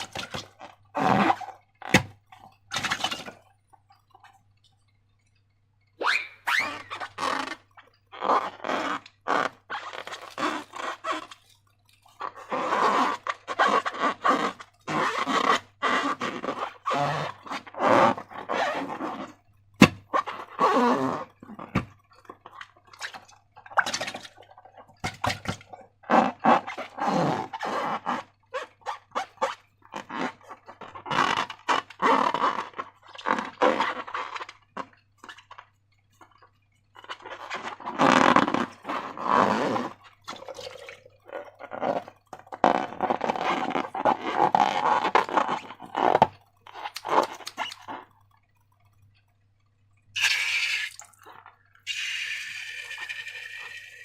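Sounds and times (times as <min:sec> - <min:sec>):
slime squelching and crackling: 0:37.0 - 0:49.0.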